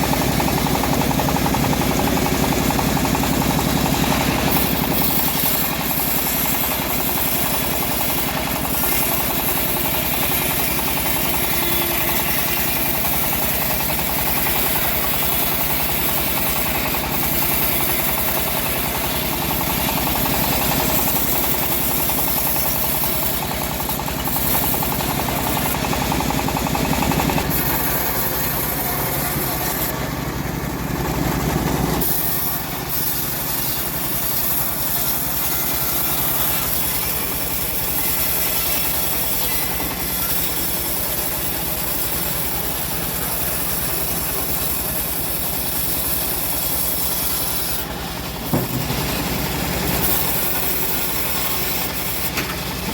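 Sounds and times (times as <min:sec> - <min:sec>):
bandsaw mill engine running: 0:00.0 - 0:52.9
saw cutting logs: 0:00.0 - 0:52.9.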